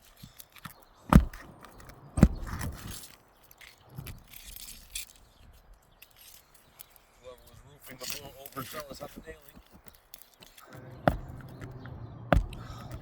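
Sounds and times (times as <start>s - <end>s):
gritty scrape on shingles: 0.0s - 13.0s
tool knocking on roofing nails: 11.1s - 11.6s, 12.3s - 13.0s.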